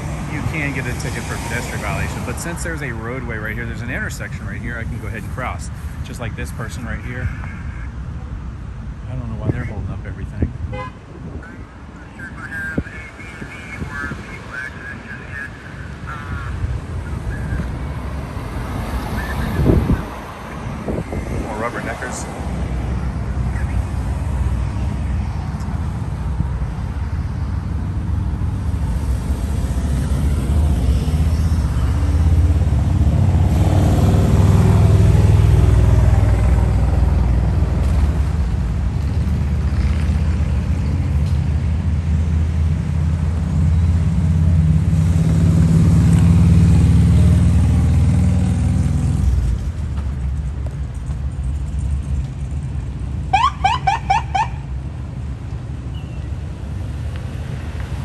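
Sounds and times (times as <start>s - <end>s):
road traffic passing: 0.0s - 58.0s.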